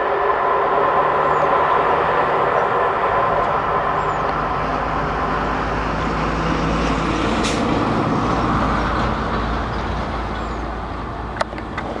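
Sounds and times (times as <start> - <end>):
train wheels rumbling on rails: 0.0 - 12.0.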